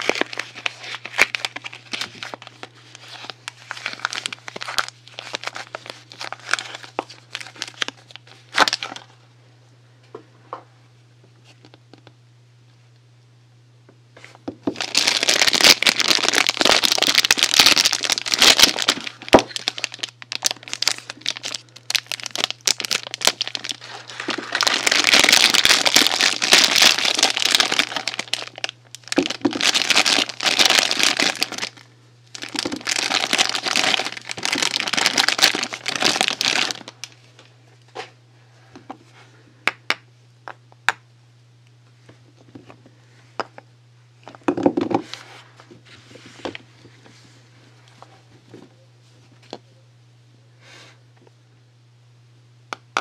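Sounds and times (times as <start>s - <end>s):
packaging crinkling and rustling: 0.0s - 9.1s, 14.6s - 37.5s.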